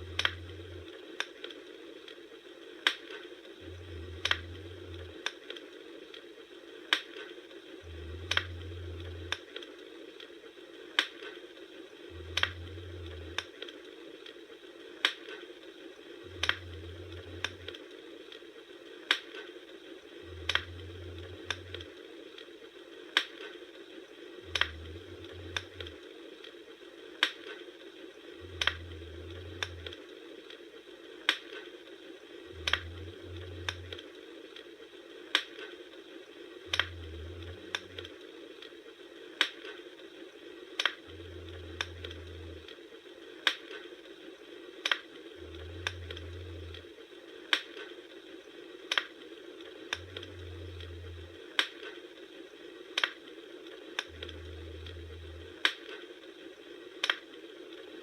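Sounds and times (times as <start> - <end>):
low hum: 0.0 - 2.1, 3.4 - 6.8, 7.4 - 23.1, 23.7 - 35.0, 36.0 - 39.3, 40.4 - 43.3, 45.2 - 47.4, 49.6 - 52.0, 53.8 - 56.1
campfire crackling and popping: 0.0 - 58.0.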